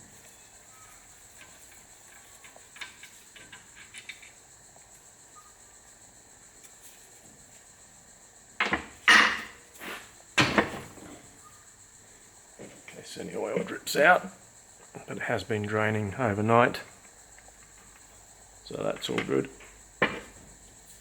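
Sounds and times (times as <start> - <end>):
crickets chirring: 0.0 - 21.0
fork parts knocking and scraping: 8.6 - 11.2, 18.7 - 20.5.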